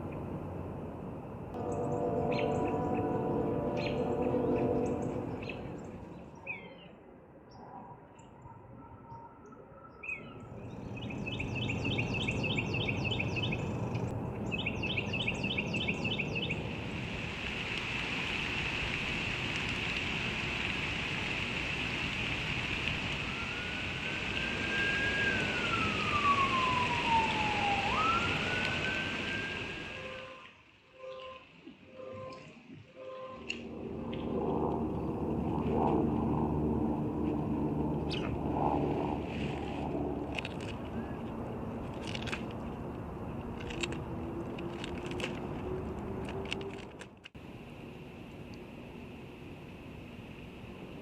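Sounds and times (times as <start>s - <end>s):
high steady buzz: 1.6s - 6.0s
emergency vehicle siren wailing: 1.6s - 6.1s, 23.0s - 34.8s.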